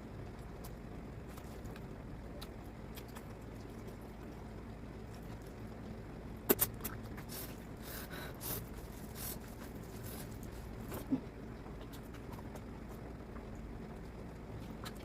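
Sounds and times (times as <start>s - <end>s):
wet chewing: 0.4s - 4.4s
sharp mouth smacks: 6.5s - 7.0s.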